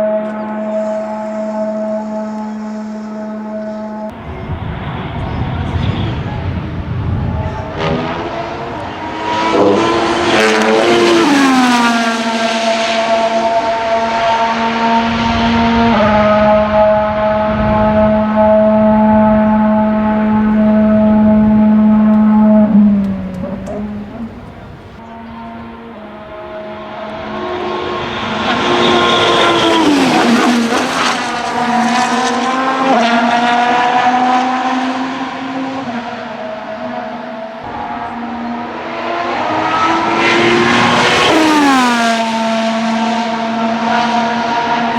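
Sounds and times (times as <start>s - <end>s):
racing car engine: 0.0s - 44.9s
engine cracks: 22.1s - 25.0s.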